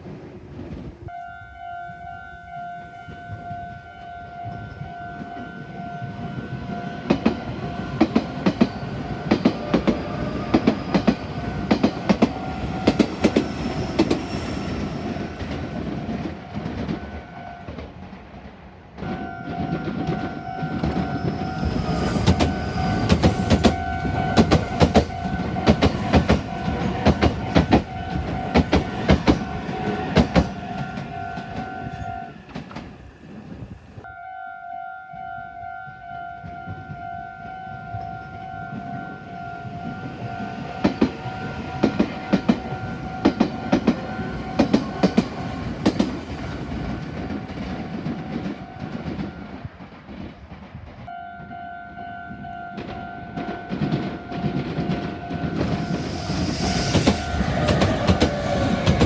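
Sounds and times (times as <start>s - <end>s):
train rumble: 2.9s - 34.1s, 36.4s - 51.5s, 52.8s - 59.0s
train wheels clacking over rail joints: 7.0s - 17.1s, 19.0s - 33.0s, 40.7s - 51.1s, 52.8s - 59.0s.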